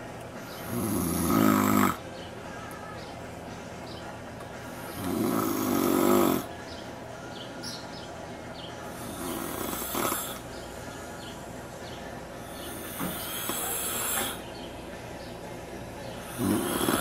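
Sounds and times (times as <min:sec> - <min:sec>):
man snoring: 0:00.6 - 0:02.0, 0:04.8 - 0:06.5, 0:08.9 - 0:10.5, 0:12.4 - 0:14.4, 0:16.2 - 0:17.0.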